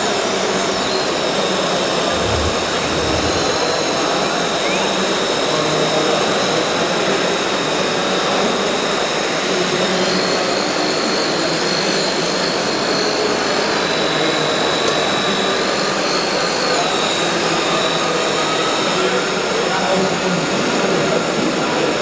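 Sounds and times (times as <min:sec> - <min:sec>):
continuous rushing noise: 0:02.1 - 0:03.7.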